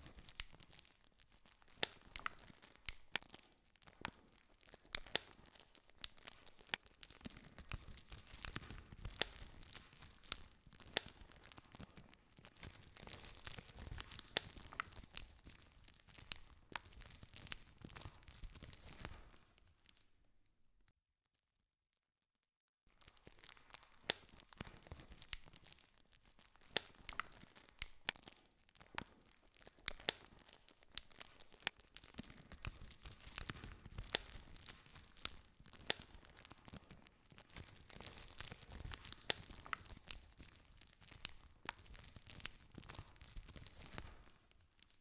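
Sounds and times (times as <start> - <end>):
wood fire crackling: 0.0 - 20.0, 23.0 - 45.0.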